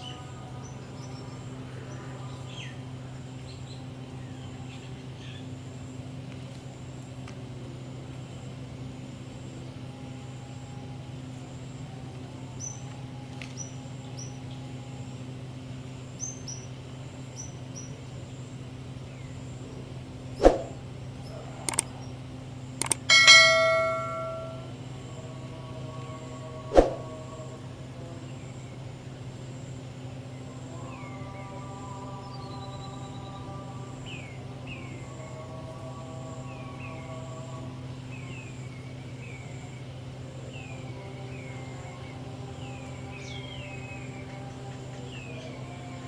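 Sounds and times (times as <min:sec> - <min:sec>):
steady low hum: 0:00.0 - 0:46.0
sharp knock: 0:23.1 - 0:24.6.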